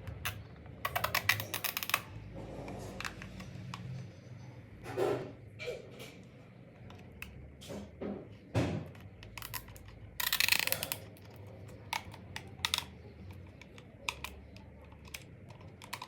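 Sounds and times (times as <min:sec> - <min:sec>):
small clicks and taps from handling: 0:08.9 - 0:16.0.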